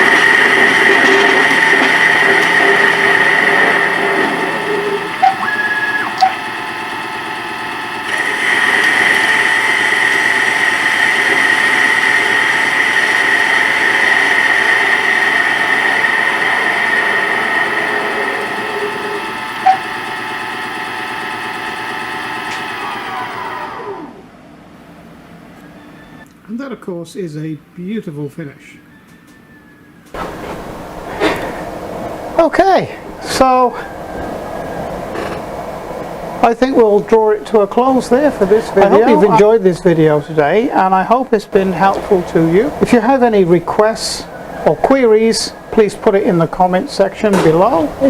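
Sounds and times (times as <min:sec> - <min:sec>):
lathe spindle motor whining: 0:00.0 - 0:24.4, 0:29.0 - 0:48.0.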